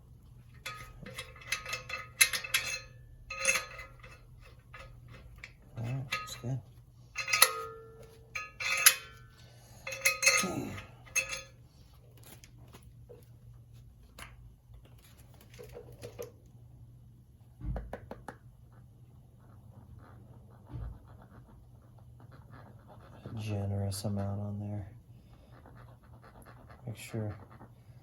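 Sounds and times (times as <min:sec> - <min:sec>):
steel parts clinking on metal: 0:00.5 - 0:11.6.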